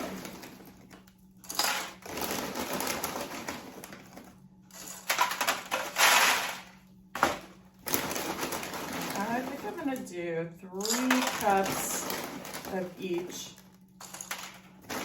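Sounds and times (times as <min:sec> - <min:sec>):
dry snacks rattling into a cup: 0:10.8 - 0:15.0.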